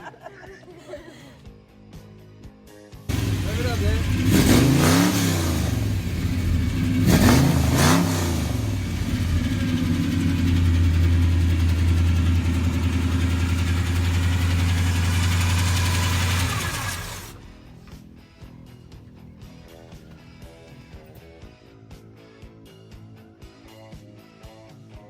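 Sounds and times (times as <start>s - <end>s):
car engine revving: 3.1s - 17.8s.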